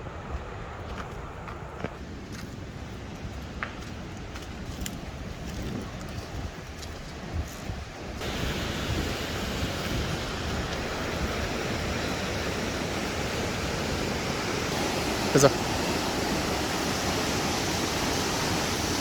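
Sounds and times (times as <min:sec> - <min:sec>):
river water rushing: 0:08.2 - 0:19.0.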